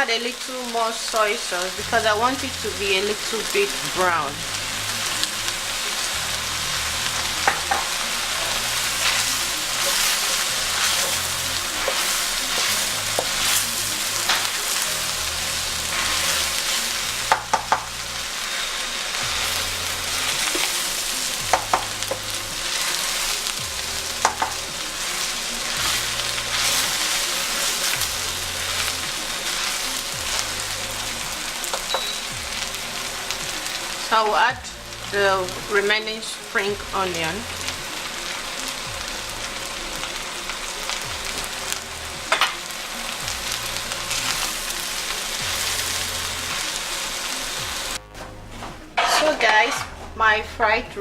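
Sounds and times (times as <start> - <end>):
rice sizzling in frying pan: 0.0 - 51.0
utensil knocking against pan: 7.4 - 7.9, 17.3 - 17.9, 21.5 - 22.3, 24.2 - 24.6.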